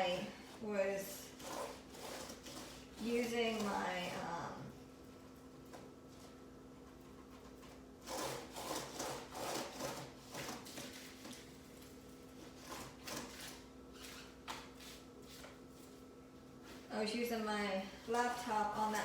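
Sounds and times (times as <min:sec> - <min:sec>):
rubbing and scraping on hard surface: 0:00.0 - 0:04.4, 0:18.0 - 0:19.0.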